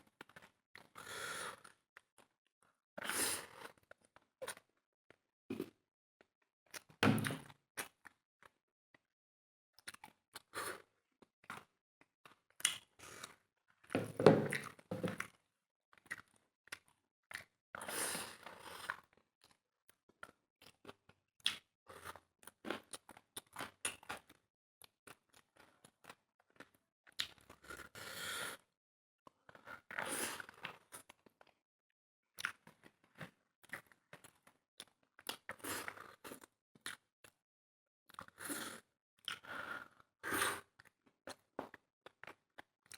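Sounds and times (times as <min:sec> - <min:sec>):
chewing and crunching: 0:00.2 - 0:01.0, 0:09.8 - 0:10.5, 0:14.5 - 0:19.6, 0:20.2 - 0:27.9, 0:32.4 - 0:37.4, 0:40.6 - 0:42.9.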